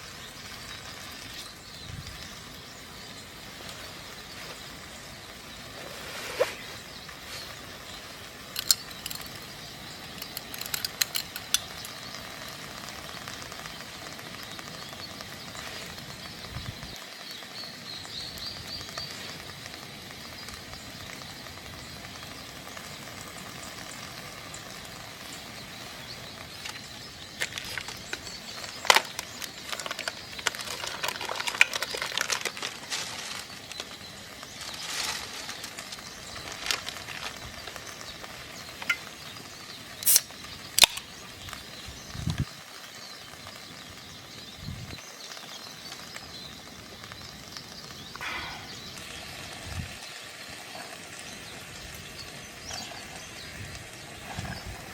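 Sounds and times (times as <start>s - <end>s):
sizzling hiss: 0.0s - 54.9s
clicks and clatters: 8.5s - 9.5s, 10.1s - 12.1s, 26.6s - 33.9s.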